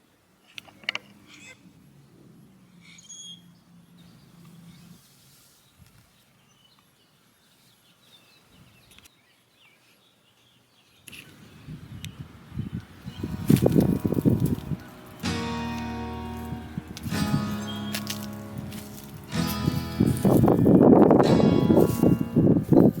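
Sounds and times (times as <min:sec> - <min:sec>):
faint bird chirps: 0:02.8 - 0:04.9
low rumbling noise: 0:13.0 - 0:23.0.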